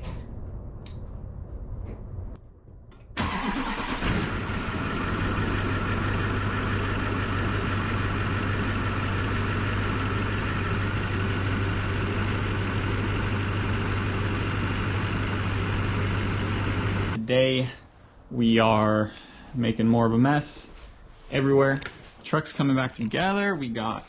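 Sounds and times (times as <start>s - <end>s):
diesel engine starting and idling: 3.0s - 17.2s.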